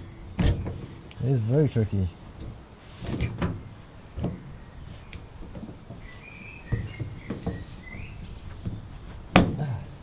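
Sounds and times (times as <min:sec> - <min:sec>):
faint high chirping: 0:06.0 - 0:09.0.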